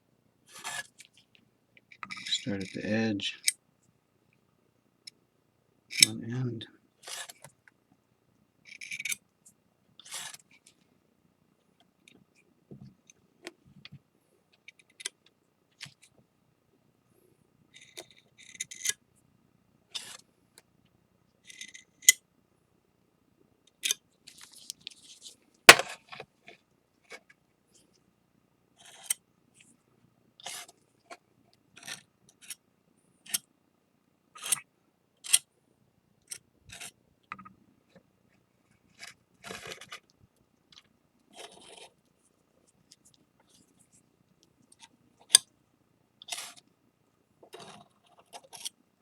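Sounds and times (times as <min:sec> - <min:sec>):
palette knife scraping ceramic: 0:02.0 - 0:02.5.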